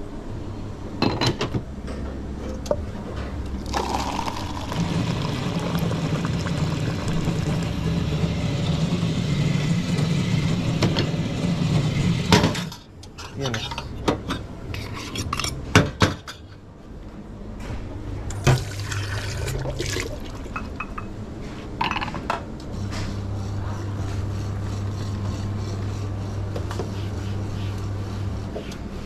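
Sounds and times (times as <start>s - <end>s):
low machine hum: 0.0s - 29.0s
liquid being poured: 3.6s - 8.0s, 18.4s - 20.8s
cups and glassware clinking: 18.4s - 21.1s, 21.8s - 22.4s.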